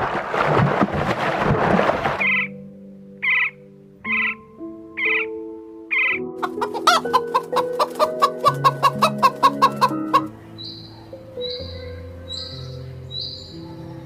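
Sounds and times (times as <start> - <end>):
background music: 2.2 - 14.0
fowl clucking: 5.9 - 10.3.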